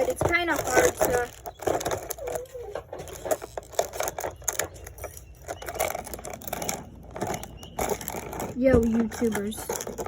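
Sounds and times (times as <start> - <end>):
plastic packaging crackling: 0.0 - 10.0
scissors cutting plastic: 0.0 - 10.0.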